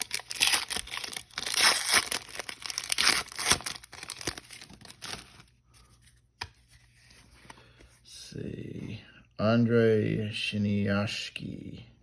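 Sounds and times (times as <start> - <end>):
plastic wrapper tearing and crinkling: 0.0 - 5.5.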